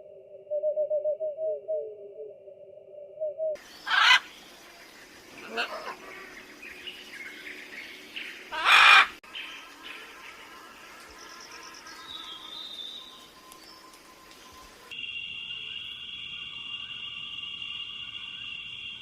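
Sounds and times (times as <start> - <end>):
harsh bird calls: 3.6 - 13.3.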